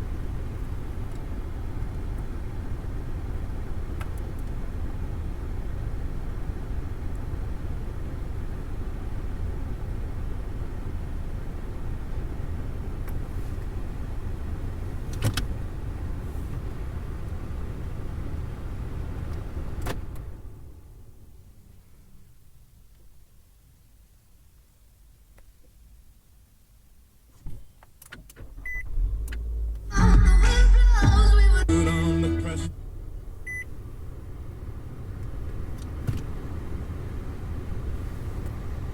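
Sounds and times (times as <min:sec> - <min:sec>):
low rumble inside a car: 0:00.0 - 0:38.9
car cabin rumble: 0:28.3 - 0:38.9
car radio cutting off: 0:28.4 - 0:32.8.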